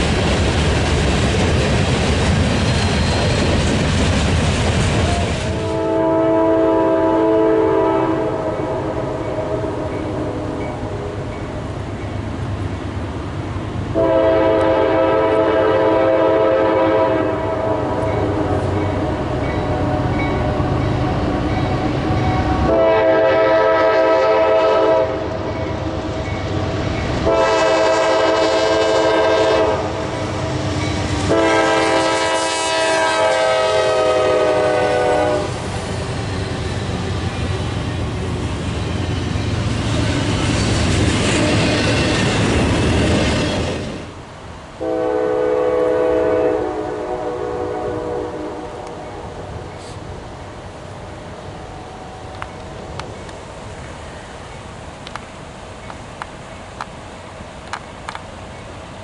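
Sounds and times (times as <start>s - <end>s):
passing train rumble: 0.0s - 59.0s
train air horn blasts: 5.1s - 11.2s, 13.9s - 25.5s, 27.2s - 35.6s, 44.8s - 50.0s.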